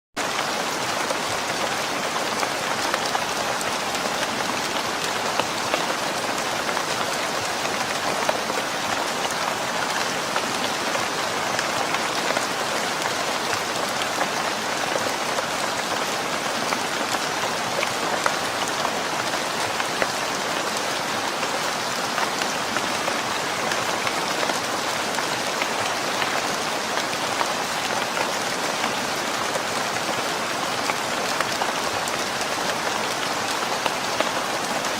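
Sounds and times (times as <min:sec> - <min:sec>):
steady rain falling: 0:00.2 - 0:34.9.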